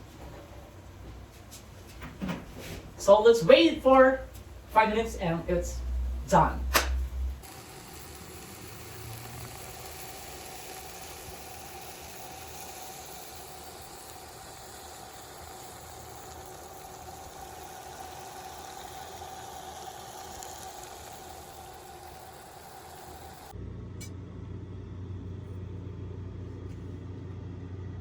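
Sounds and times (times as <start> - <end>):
steady hum: 0.0 - 24.2
pan sizzling hiss: 6.9 - 23.5.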